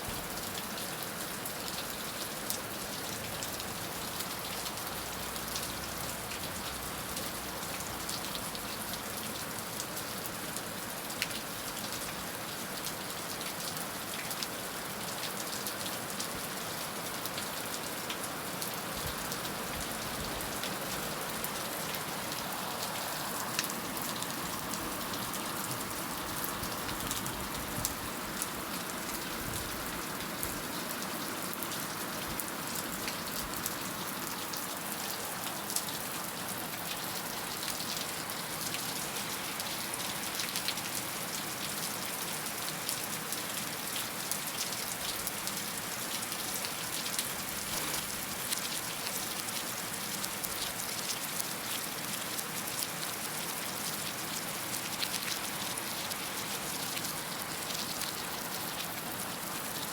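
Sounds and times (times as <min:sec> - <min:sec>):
heavy rain falling: 0:14.2 - 0:59.9.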